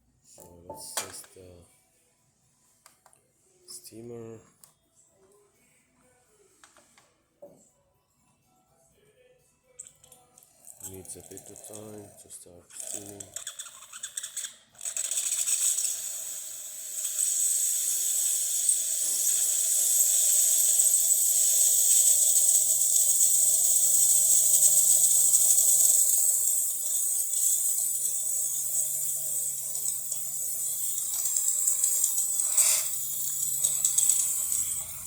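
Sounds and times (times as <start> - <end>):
steam wand hissing: 15.0 - 35.0.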